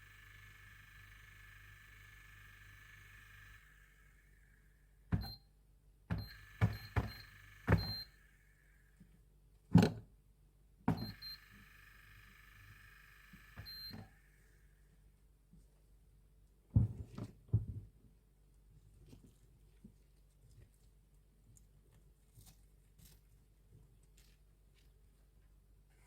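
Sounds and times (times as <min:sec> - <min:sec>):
faint ringing tone: 0:00.0 - 0:05.5, 0:06.2 - 0:09.0, 0:10.9 - 0:14.9.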